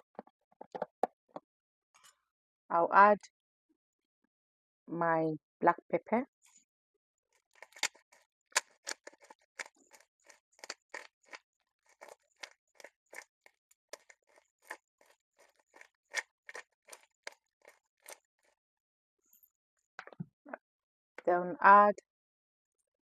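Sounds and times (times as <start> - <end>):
pepper mill grinding: 7.4 - 18.2.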